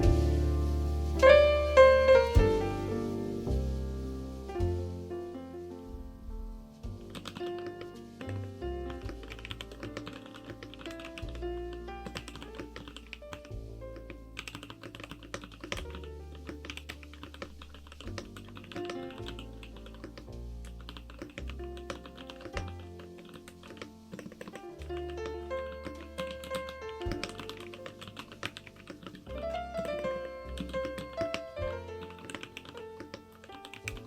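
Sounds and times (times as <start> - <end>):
background music: 0.0 - 34.0
mechanical keyboard typing: 7.2 - 7.8, 12.0 - 34.0.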